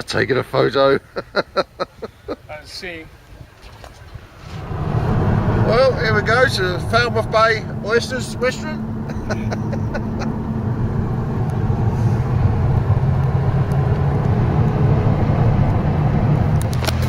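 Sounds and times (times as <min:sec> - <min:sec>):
car engine and road drone: 0:04.3 - 0:17.0.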